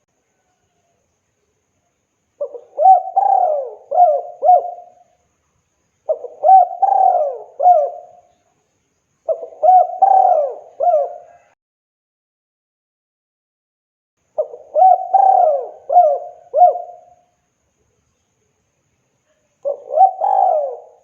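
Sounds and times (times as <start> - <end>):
dove cooing: 2.4 - 5.0, 6.1 - 8.3, 9.3 - 11.6, 14.4 - 17.2, 19.6 - 21.0.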